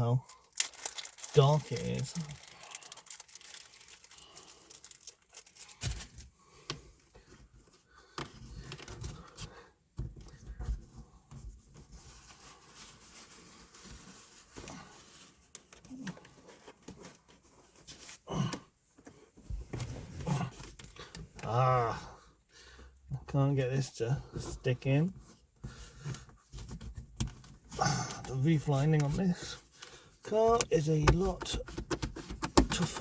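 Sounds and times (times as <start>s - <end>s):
cable rustling and rubbing: 0.5s - 21.6s.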